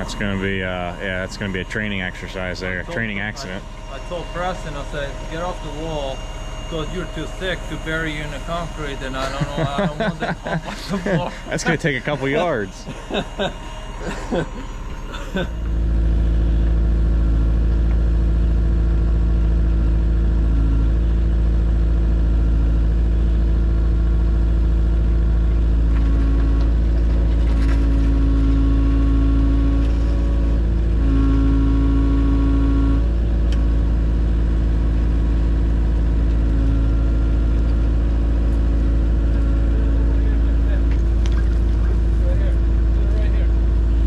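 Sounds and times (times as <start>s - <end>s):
large engine running: 0.0s - 44.0s.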